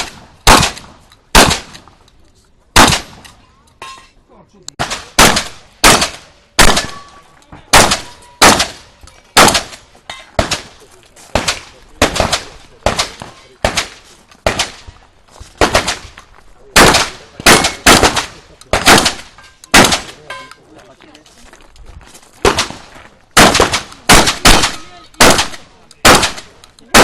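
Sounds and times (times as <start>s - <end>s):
shotgun shots: 0.0s - 1.9s, 2.8s - 3.4s, 4.8s - 7.1s, 7.7s - 9.8s, 10.4s - 15.0s, 15.6s - 20.3s, 22.4s - 27.0s.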